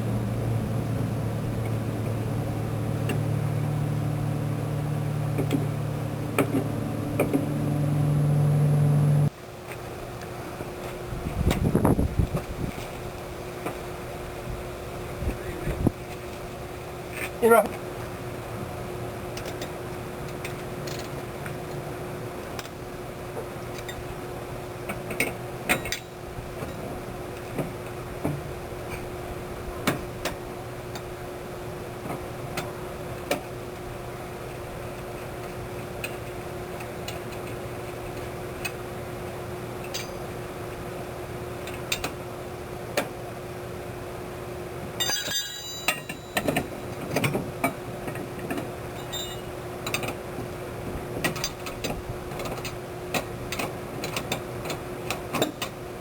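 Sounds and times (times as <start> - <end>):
steady mechanical hum: 0.0 - 56.0
metallic clinks and knocks: 45.0 - 47.3.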